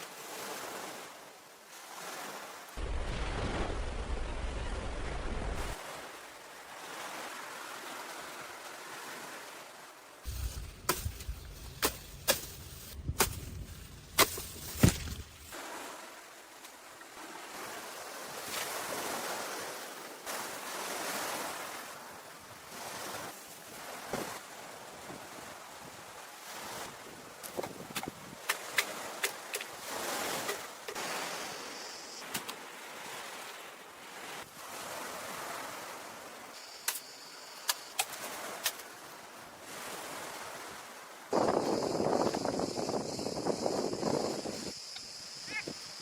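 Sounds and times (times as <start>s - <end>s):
sea surf washing on a beach: 0.0s - 46.0s
wind rumble on the microphone: 26.8s - 28.4s, 41.3s - 44.8s.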